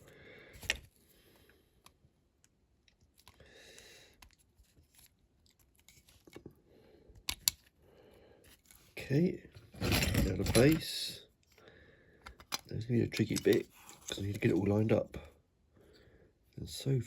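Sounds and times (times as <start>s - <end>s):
faint clicks of small model parts: 0.6s - 7.8s, 12.2s - 14.6s.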